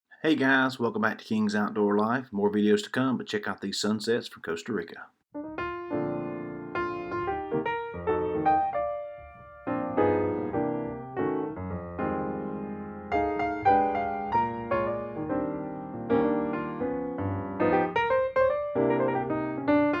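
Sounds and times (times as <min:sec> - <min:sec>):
solo piano playing: 0:05.4 - 0:20.0.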